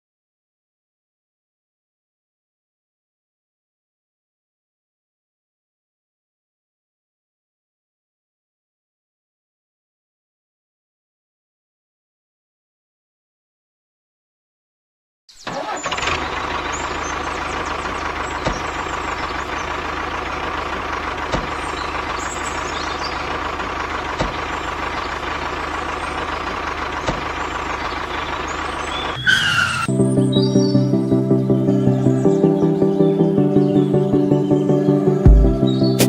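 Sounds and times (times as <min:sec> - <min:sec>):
music with steady beat: 0:33.2 - 0:36.0.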